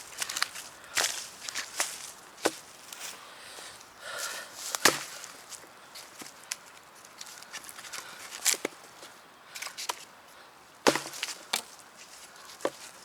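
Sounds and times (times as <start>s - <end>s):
axe chopping wood: 4.7s - 5.2s, 10.8s - 11.7s.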